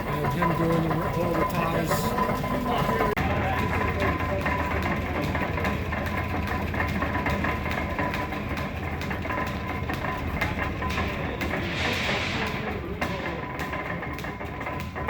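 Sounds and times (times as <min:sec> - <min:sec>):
regular ticking: 0:00.0 - 0:11.6
lathe running: 0:00.0 - 0:15.0.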